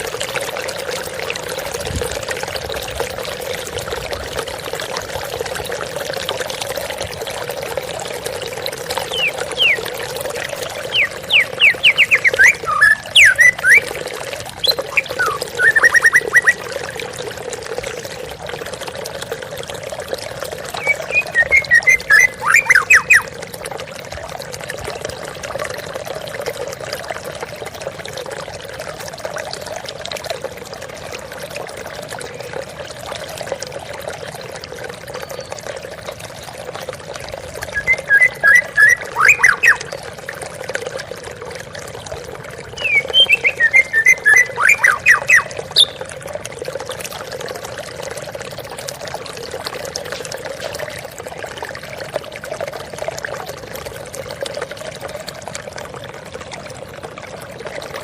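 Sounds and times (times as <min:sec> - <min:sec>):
bird singing: 0:09.1 - 0:09.8, 0:10.8 - 0:13.9, 0:14.6 - 0:16.6, 0:20.8 - 0:23.3, 0:37.7 - 0:39.9, 0:42.8 - 0:46.0.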